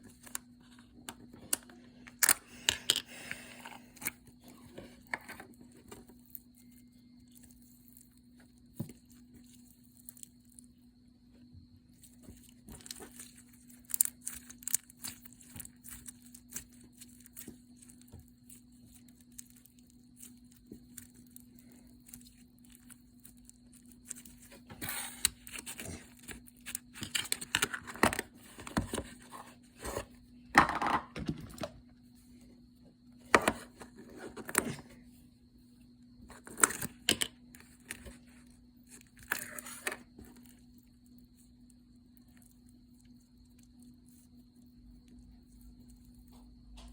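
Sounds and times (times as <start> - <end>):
faint steady hum: 0.0 - 46.9.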